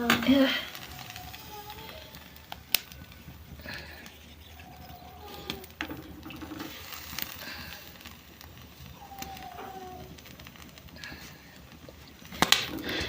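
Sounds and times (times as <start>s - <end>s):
faint wavering animal calls: 3.6s - 6.2s, 8.8s - 10.2s.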